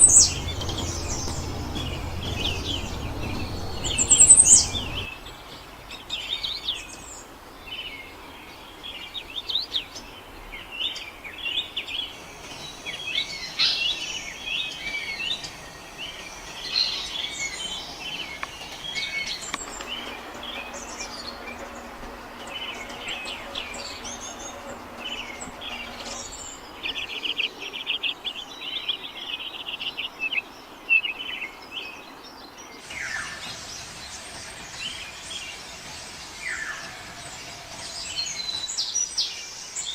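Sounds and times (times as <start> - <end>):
birds chirping and calling: 0.0 - 5.1.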